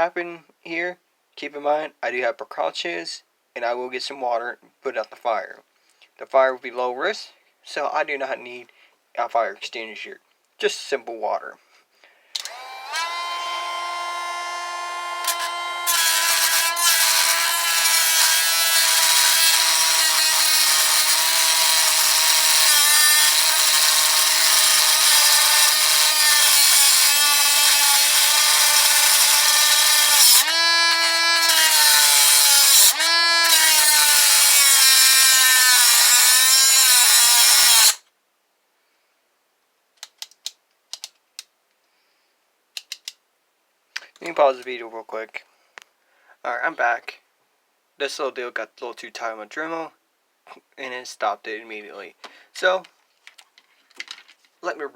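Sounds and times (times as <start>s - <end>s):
rotary tool grinding metal: 12.4s - 38.0s.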